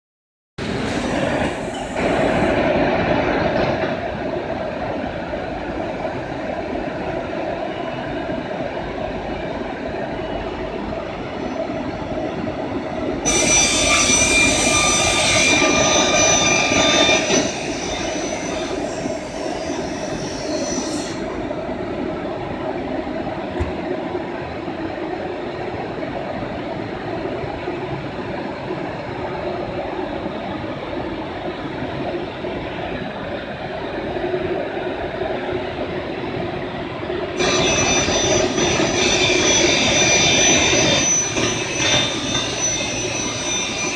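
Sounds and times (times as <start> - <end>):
cnc router machine noise: 13.2 - 21.2, 37.4 - 43.9
high-pitched whine: 13.2 - 21.4, 37.4 - 43.9.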